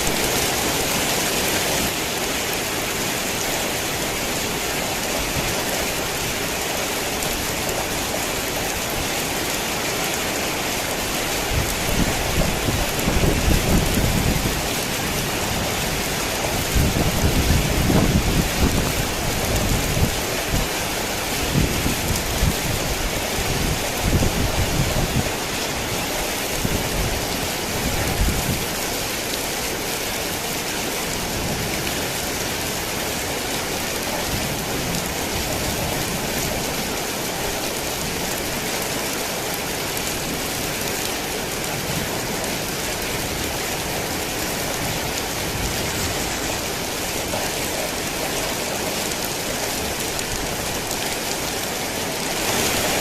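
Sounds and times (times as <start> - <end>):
heavy rain: 0.0 - 53.0
thunder rumbling: 11.5 - 20.6.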